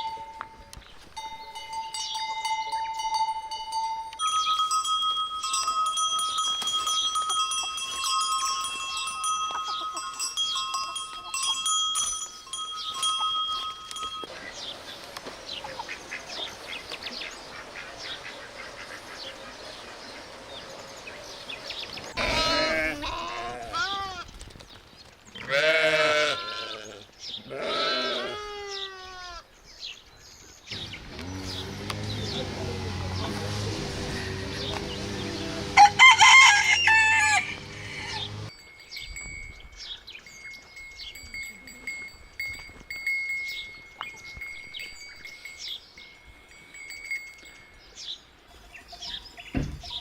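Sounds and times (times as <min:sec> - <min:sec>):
ringing bell-like tones: 0:00.0 - 0:14.4, 0:36.6 - 0:48.7
goats or sheep bleating: 0:22.2 - 0:24.2, 0:25.4 - 0:29.4, 0:31.6 - 0:38.5.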